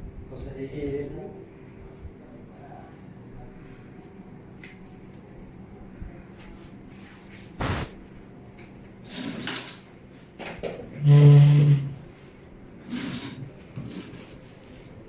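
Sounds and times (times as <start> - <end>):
short sharp knock: 7.6 - 8.0.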